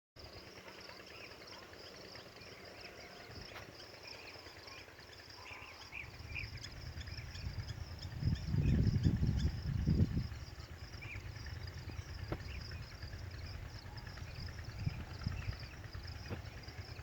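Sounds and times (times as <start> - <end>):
insects chirring: 0.2 - 17.0
small birds chirping: 0.9 - 17.0
low rumble: 6.0 - 17.0.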